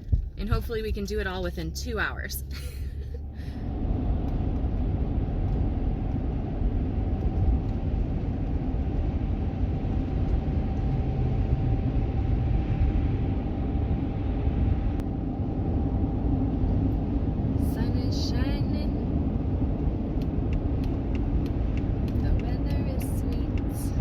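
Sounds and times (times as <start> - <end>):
van engine and road noise: 0.0 - 24.0.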